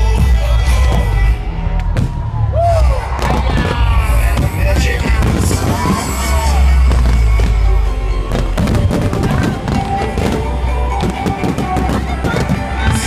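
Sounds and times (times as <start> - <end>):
loud music: 0.0 - 13.0
fireworks booming: 3.1 - 13.0
fireworks crackling pops: 3.2 - 6.3, 8.3 - 13.0.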